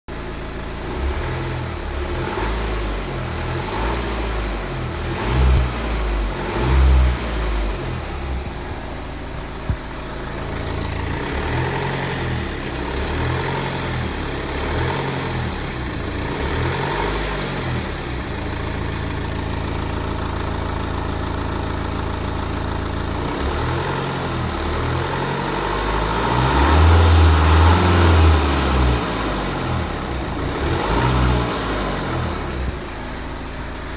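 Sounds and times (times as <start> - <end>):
diesel engine revving: 0.1 - 33.9
engine clacking noise: 3.5 - 17.2.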